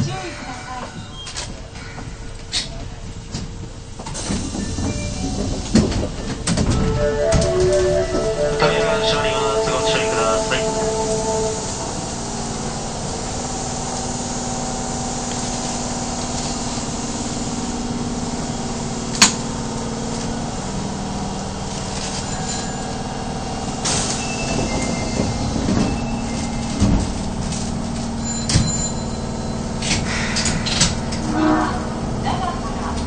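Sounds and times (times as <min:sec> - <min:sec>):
subway motor hum: 0:00.0 - 0:33.0
train wheels knocking on track: 0:02.8 - 0:12.8.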